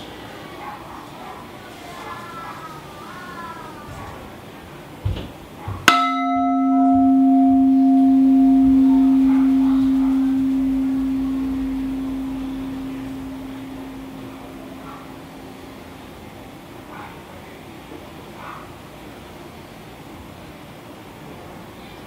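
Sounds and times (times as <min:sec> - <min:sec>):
metal bowl ringing: 0:05.9 - 0:16.3.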